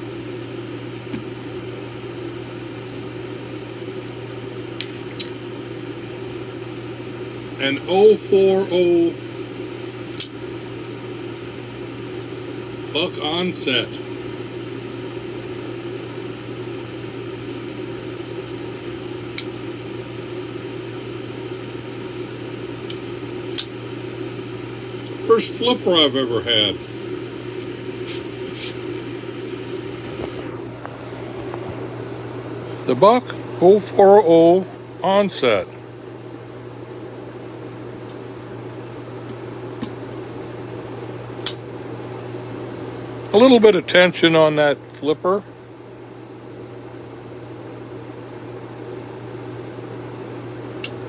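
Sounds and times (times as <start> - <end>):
low mechanical hum: 0.0 - 51.0
flipper knife clicks: 10.1 - 10.3, 22.9 - 23.7.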